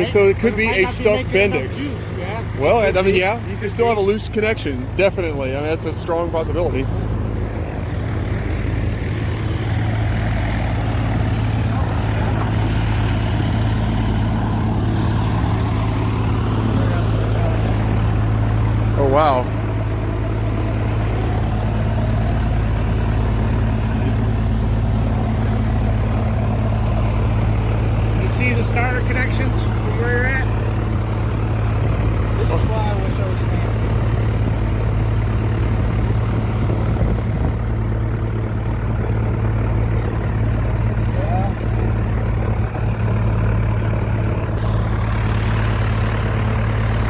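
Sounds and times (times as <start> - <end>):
engine running low drone: 0.0 - 47.0.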